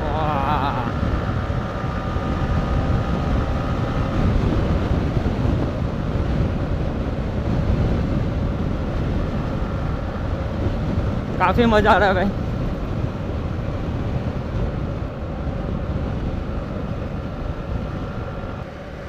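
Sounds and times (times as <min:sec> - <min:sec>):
motorcycle engine: 0:00.0 - 0:19.0
wind rush: 0:00.0 - 0:19.0.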